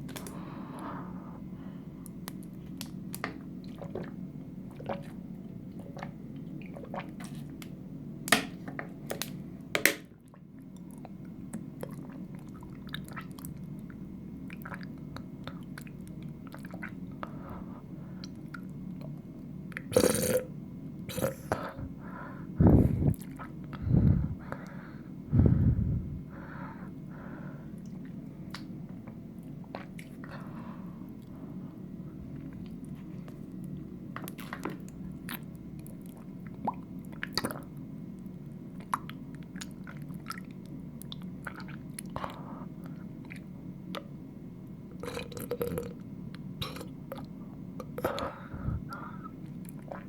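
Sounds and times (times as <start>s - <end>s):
person gulping water: 3.6s - 7.4s, 19.8s - 20.5s, 21.1s - 21.7s, 45.0s - 46.0s, 46.6s - 49.0s, 49.7s - 50.0s.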